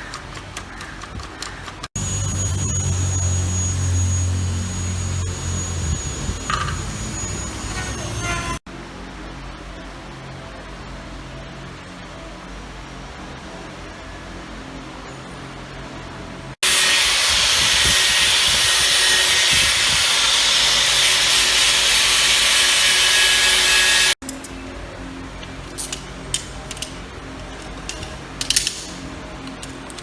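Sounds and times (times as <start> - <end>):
clicks and knocks of hand work: 0.0 - 2.0
low hum: 2.0 - 8.2
power tool running: 2.0 - 8.6, 16.6 - 24.2.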